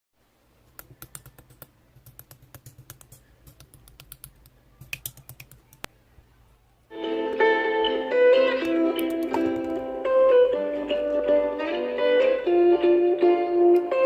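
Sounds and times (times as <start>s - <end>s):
keyboard key clicks: 0.8s - 5.9s, 8.6s - 9.8s.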